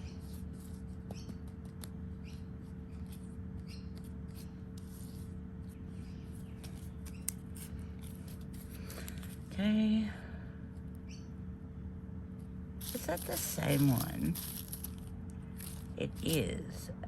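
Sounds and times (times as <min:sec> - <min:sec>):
steady low hum: 0:00.0 - 0:17.0
hands rustling potting mix: 0:12.8 - 0:16.9.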